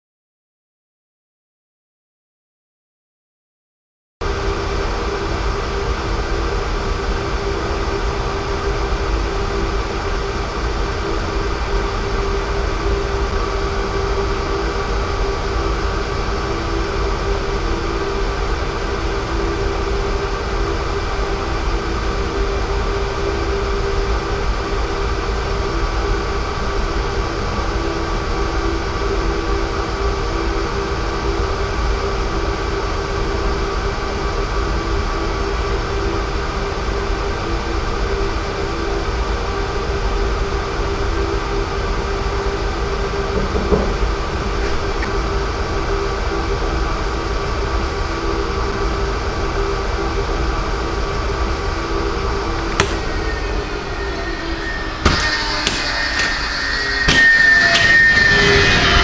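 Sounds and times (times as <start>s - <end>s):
electric fan motor humming: 50.2s - 58.1s.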